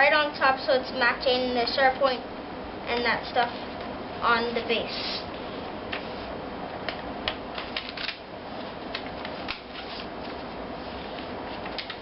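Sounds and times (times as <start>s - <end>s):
steady hiss: 0.0s - 6.6s.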